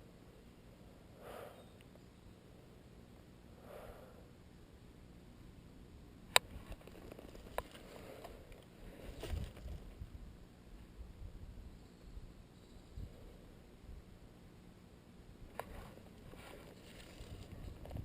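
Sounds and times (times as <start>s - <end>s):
person sniffing: 1.2s - 1.7s.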